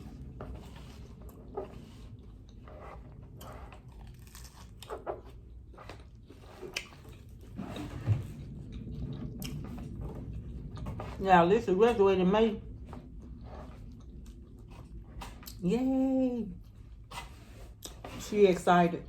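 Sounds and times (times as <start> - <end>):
crunchy chewing: 0.0 - 7.9.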